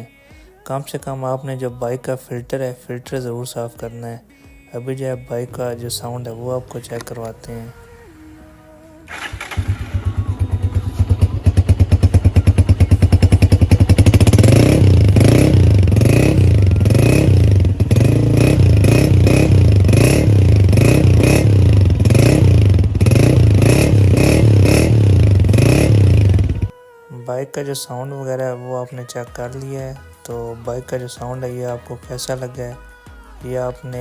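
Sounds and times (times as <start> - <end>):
motorcycle engine revving: 9.1 - 26.7.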